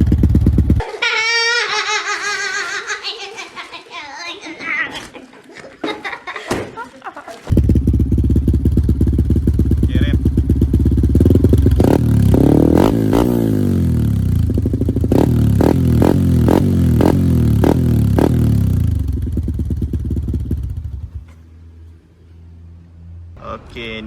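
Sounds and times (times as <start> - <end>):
exhaust cracks: 0.0 - 0.9, 7.4 - 21.5
motorcycle engine revving: 0.0 - 0.9, 7.5 - 21.4.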